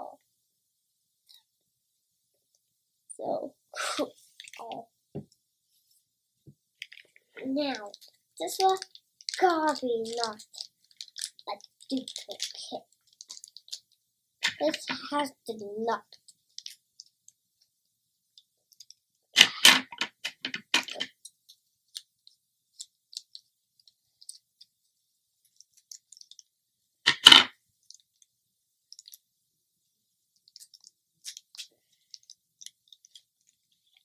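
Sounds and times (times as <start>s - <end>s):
plastic wrapper crinkling and tearing: 6.8s - 15.0s, 16.1s - 17.1s, 30.5s - 34.0s.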